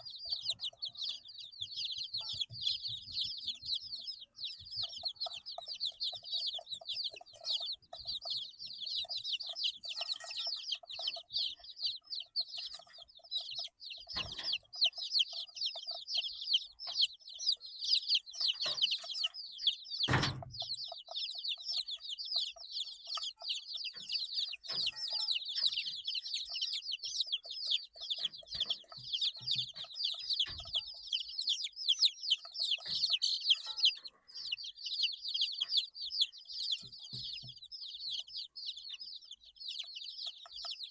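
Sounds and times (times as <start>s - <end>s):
chicks peeping: 0.0s - 40.9s
loud thump: 20.1s - 20.6s.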